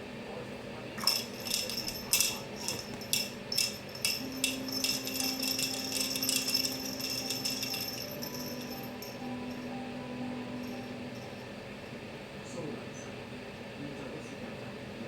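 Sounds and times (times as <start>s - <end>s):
steady low hum: 0.0s - 12.8s
metallic jingling: 1.0s - 9.7s.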